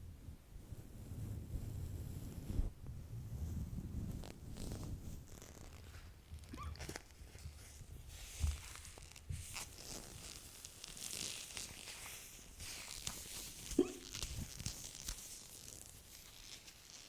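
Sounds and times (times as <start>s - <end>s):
woman hiccuping: 13.8s - 14.2s.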